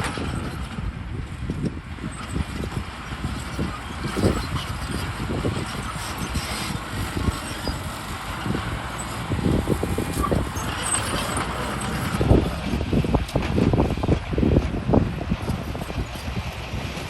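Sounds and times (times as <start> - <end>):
heavy vehicle engine rumbling: 0.0 - 17.0.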